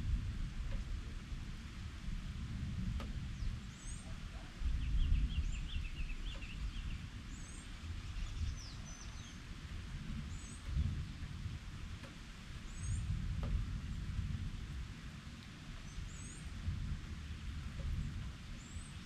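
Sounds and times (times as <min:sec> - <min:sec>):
low rumble: 0:00.0 - 0:12.0
bird chirps: 0:04.8 - 0:09.4.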